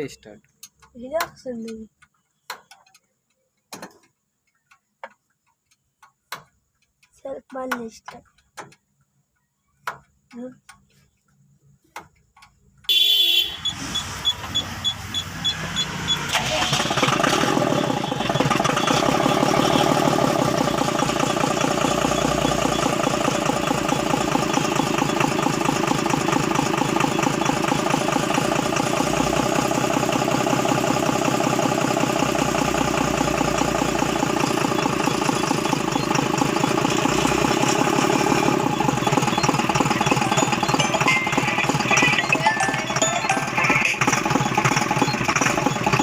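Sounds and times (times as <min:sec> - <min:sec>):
diesel engine idling: 0:12.9 - 0:46.0.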